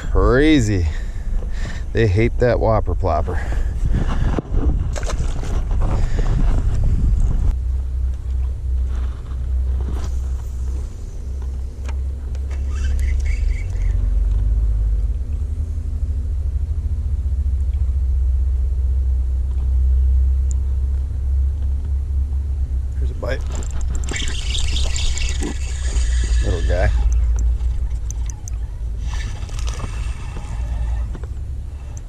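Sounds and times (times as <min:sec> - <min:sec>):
wind buffeting microphone: 0:00.0 - 0:07.6.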